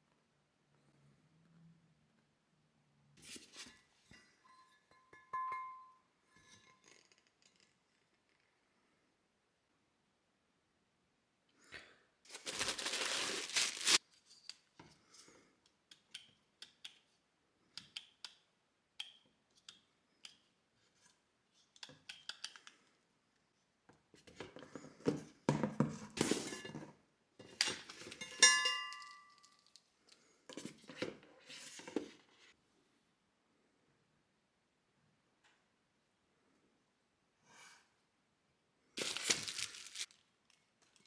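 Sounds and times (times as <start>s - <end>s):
packaging rustling: 12.3s - 14.0s, 39.0s - 40.3s
small clicks and taps: 17.7s - 20.5s, 21.8s - 22.8s.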